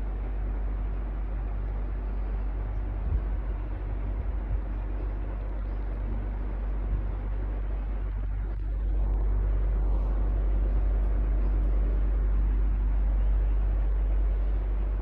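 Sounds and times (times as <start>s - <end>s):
electric fan running: 0.0s - 15.0s.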